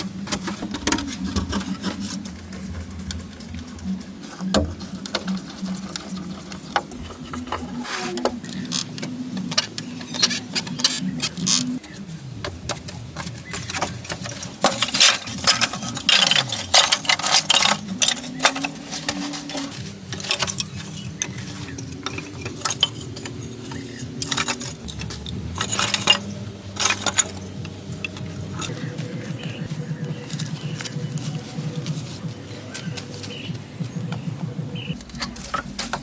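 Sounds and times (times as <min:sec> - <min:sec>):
hard objects clinking: 0:00.1 - 0:33.5.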